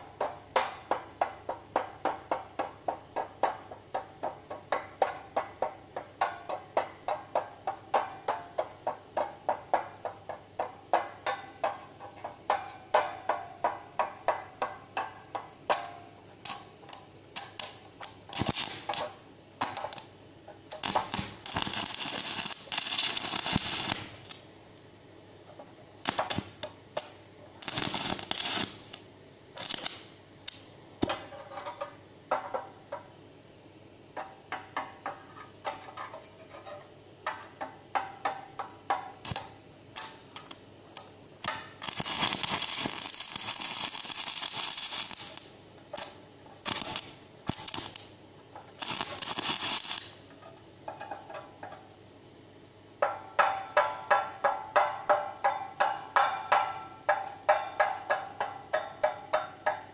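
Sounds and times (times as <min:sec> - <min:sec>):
welding arc crackling: 0:16.4 - 0:20.1, 0:20.7 - 0:24.5, 0:25.5 - 0:31.9, 0:38.0 - 0:51.8.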